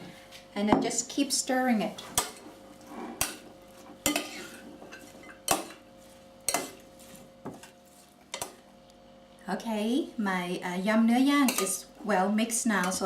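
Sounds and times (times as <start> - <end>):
utensil clinking against a bowl: 6.5 - 6.8.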